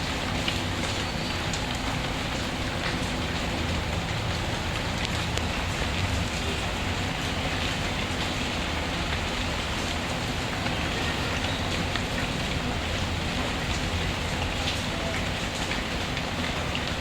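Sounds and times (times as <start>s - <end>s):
steady rainfall: 0.0s - 17.0s.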